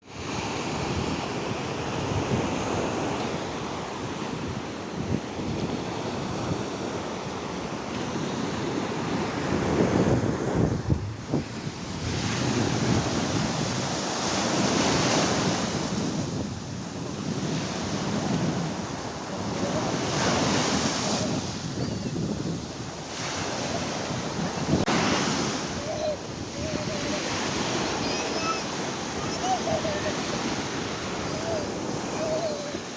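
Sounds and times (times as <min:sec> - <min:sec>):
sea waves washing in: 0:00.1 - 0:32.9
wind buffeting microphone: 0:08.2 - 0:32.9.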